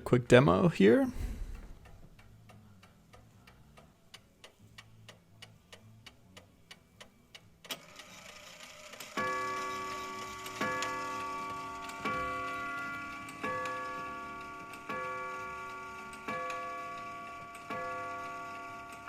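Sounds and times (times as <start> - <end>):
clock strikes ringing: 9.2 - 19.0
mantel clock ticking: 9.2 - 19.0.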